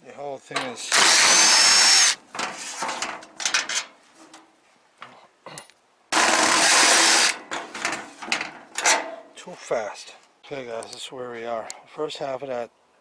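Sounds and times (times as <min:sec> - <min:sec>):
metal grill parts clattering: 0:02.3 - 0:04.4, 0:07.4 - 0:09.3.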